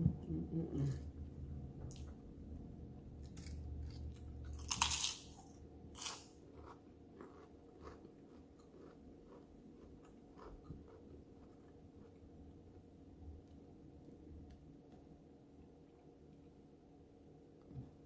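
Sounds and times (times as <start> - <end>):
crunchy bite: 3.2 - 11.6
chewing with wet clicks: 6.6 - 12.3.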